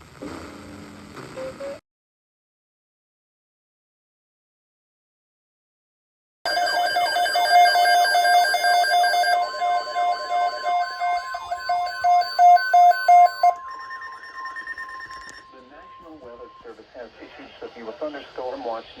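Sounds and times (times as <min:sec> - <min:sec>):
electronic beeping and falling chirps: 0:06.5 - 0:16.8
steady alarm tone: 0:06.5 - 0:17.2.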